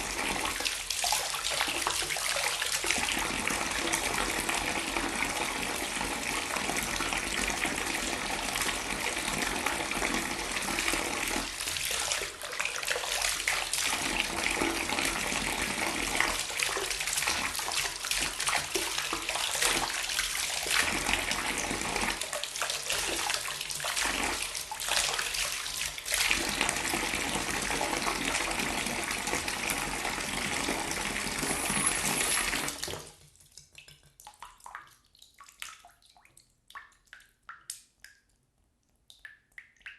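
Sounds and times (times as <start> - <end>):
water pouring: 0.0 - 35.9
faint water drips: 32.9 - 39.9.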